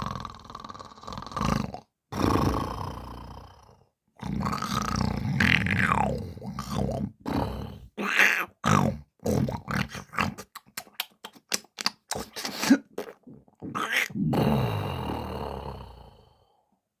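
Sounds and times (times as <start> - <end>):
man snoring: 0.0 - 7.9, 14.1 - 16.6.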